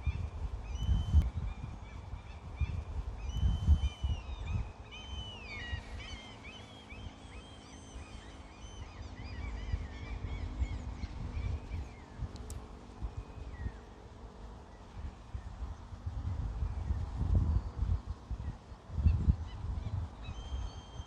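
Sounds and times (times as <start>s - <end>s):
wild birds calling and singing: 0.0s - 12.5s, 18.4s - 21.0s.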